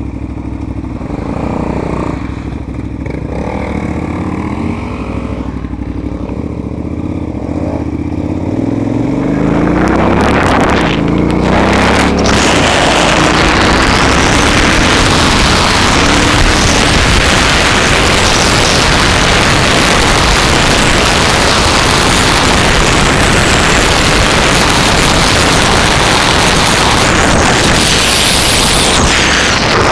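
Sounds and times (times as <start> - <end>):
motorcycle engine: 0.0 - 29.9
wind noise on microphone: 9.4 - 29.9.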